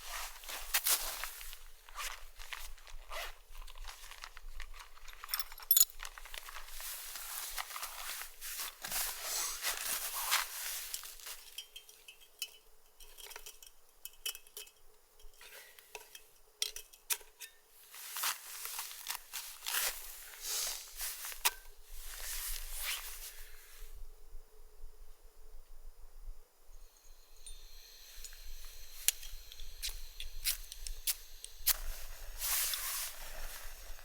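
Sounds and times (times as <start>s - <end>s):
rustling: 0.0s - 11.6s, 17.9s - 23.8s, 28.2s - 34.0s
light clicks and clinks: 4.6s - 6.7s, 10.8s - 17.6s, 27.0s - 31.9s.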